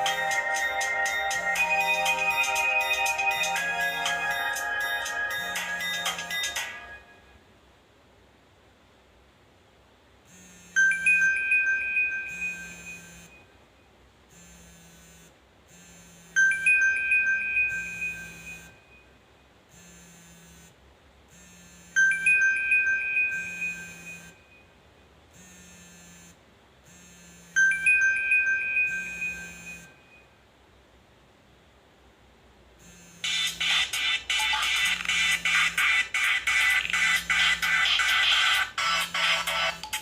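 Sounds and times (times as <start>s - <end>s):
chime-like ringtone: 0.0s - 7.3s, 10.8s - 13.4s, 16.4s - 19.0s, 22.0s - 24.6s, 27.6s - 30.2s, 33.2s - 40.0s.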